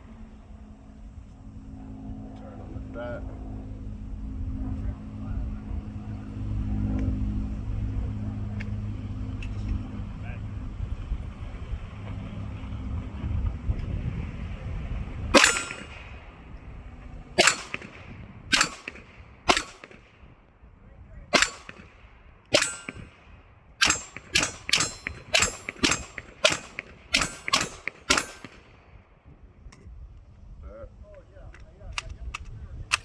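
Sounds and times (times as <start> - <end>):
pistol gunshots: 15.4 - 16.2, 17.4 - 20.2, 21.3 - 28.8.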